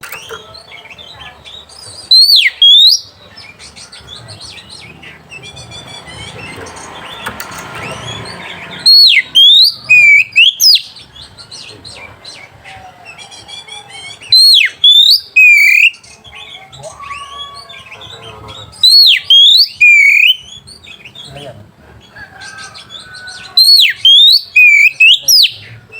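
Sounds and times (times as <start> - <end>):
bird twittering: 0.0 - 25.9
bird whistling song: 0.0 - 25.9.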